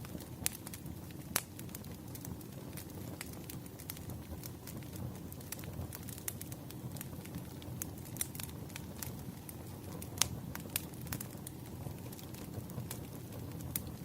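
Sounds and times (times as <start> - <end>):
burning wood crackling and popping: 0.0 - 14.0
campfire flames rumbling: 0.0 - 14.0.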